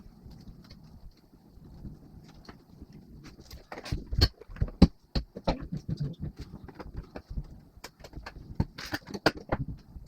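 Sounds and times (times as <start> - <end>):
clicks and knocks of parts handled: 2.2 - 10.0.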